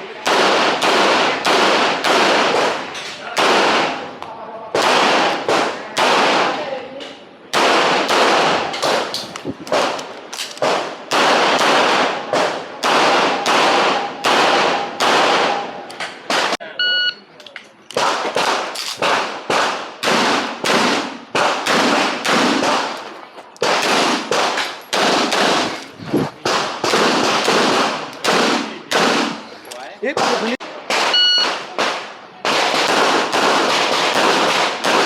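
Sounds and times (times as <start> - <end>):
pistol shots with echo: 0.2 - 4.1, 4.8 - 6.6, 7.5 - 10.0, 10.6 - 16.6, 18.0 - 25.8, 26.4 - 29.5, 30.1 - 35.0
short high beep: 16.8 - 17.2, 31.2 - 31.5.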